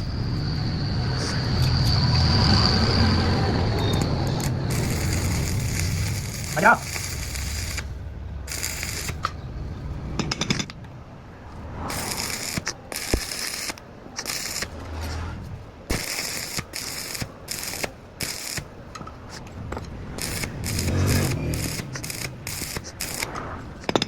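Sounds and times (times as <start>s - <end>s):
sharp clicks: 3.8s - 7.9s, 19.8s - 24.0s.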